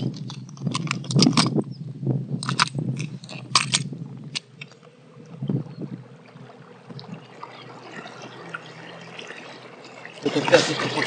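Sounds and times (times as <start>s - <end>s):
faint steady hum: 0.0s - 11.0s
water lapping against boat: 4.2s - 11.0s.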